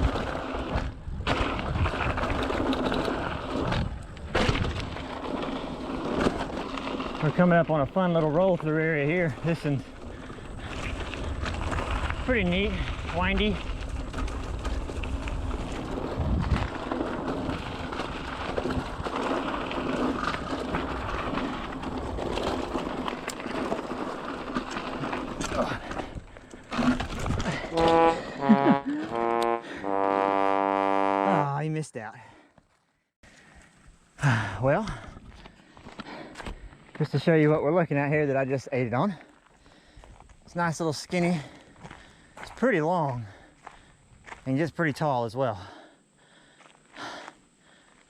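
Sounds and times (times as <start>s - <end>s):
bike tyres rattling over dirt: 0.0s - 28.6s, 32.6s - 45.8s
wind buffeting microphone: 10.1s - 19.2s.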